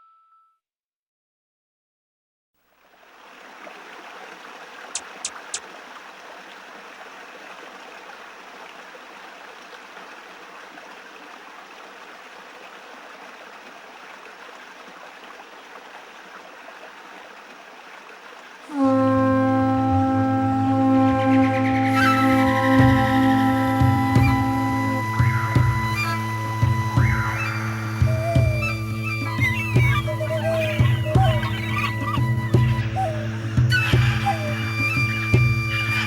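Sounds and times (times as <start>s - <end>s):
stream rushing: 2.8s - 36.0s
quick sharp clicks: 5.0s - 5.7s.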